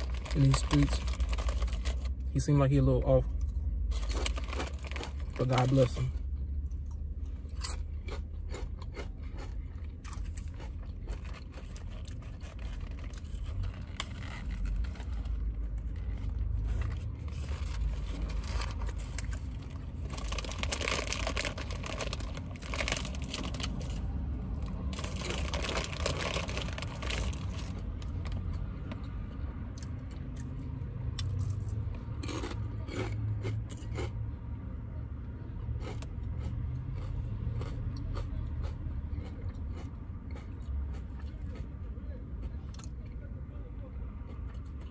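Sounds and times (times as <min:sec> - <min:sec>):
chewing and crunching food: 0:00.0 - 0:02.4, 0:03.2 - 0:34.3, 0:35.6 - 0:43.3, 0:44.1 - 0:44.9
low rumble inside car: 0:00.0 - 0:44.9.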